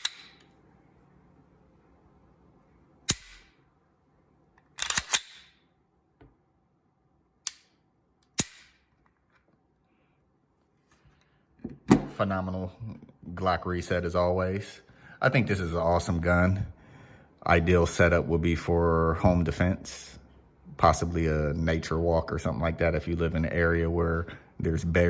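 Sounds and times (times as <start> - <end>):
pistol slide clicking: 0.0 - 0.5, 3.1 - 3.5, 4.7 - 5.6, 7.4 - 8.8
pistol trigger clicks: 4.8 - 5.6.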